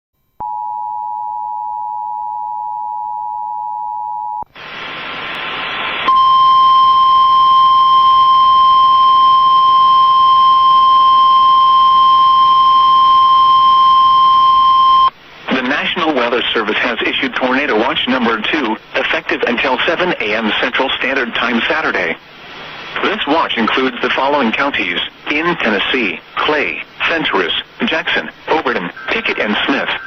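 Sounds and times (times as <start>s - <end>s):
static hiss: 4.5s - 6.8s, 15.1s - 30.0s
steady warning tone: 6.1s - 15.1s.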